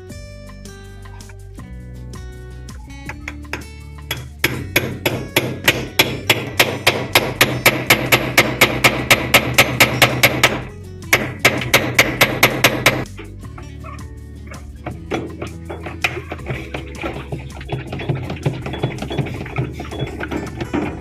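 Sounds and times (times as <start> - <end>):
hammer striking metal drum: 3.1 - 13.1, 14.8 - 21.0.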